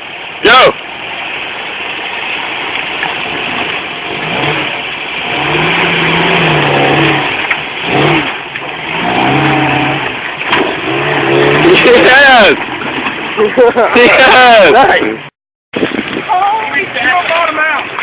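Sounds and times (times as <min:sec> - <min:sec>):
off-road vehicle engine revving: 0:03.0 - 0:15.3.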